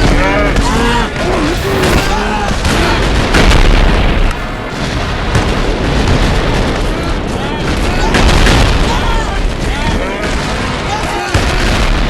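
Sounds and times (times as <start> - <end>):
cartoon stomach growl: 0.0 - 7.1.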